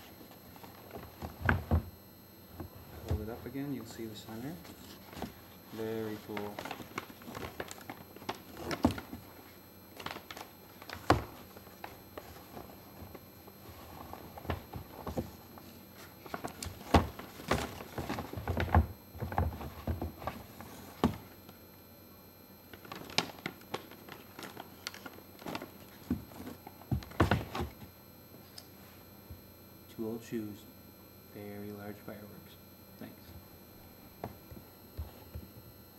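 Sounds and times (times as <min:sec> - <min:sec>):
paper rustling: 0:04.6 - 0:21.2.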